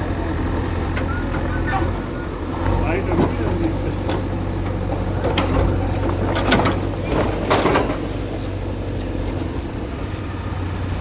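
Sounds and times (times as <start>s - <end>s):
bulldozer diesel engine running: 0.0s - 11.0s
metallic clanks and scrapes: 4.0s - 8.5s.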